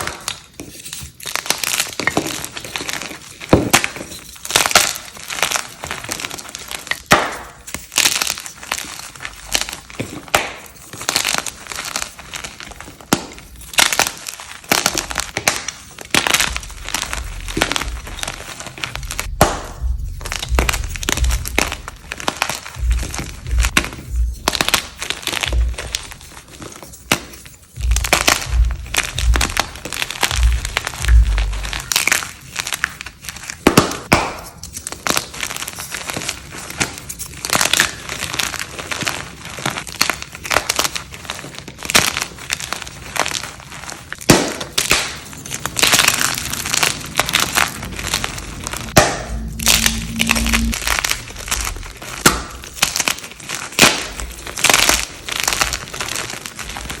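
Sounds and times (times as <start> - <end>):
blocks crunching and crumbling: 0.0 - 57.0
low thumps: 16.4 - 32.3, 47.2 - 53.0.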